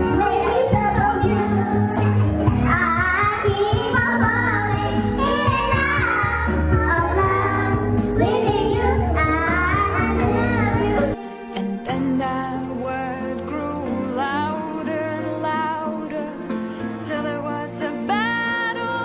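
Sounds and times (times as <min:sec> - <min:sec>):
instrumental accompaniment: 0:00.0 - 0:17.6
woman singing: 0:10.9 - 0:19.0.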